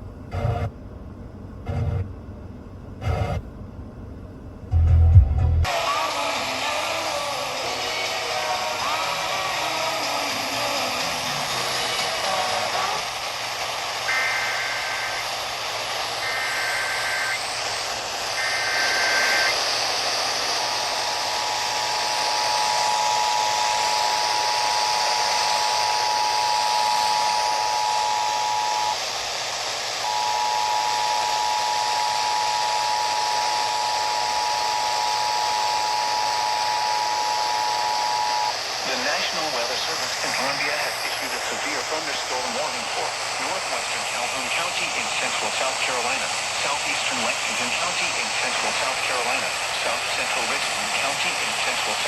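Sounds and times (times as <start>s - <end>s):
static hiss: 0.3s - 0.7s, 3.0s - 3.4s, 5.7s - 52.0s
warbling data tones: 1.7s - 2.0s, 3.0s - 3.4s.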